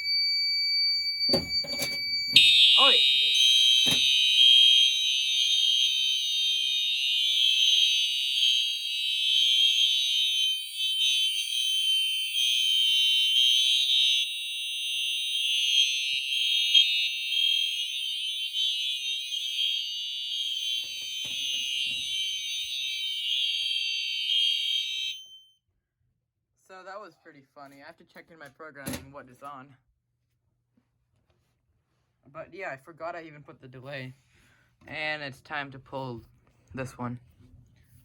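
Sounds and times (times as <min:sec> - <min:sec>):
fire alarm horns blaring: 0:00.0 - 0:25.5.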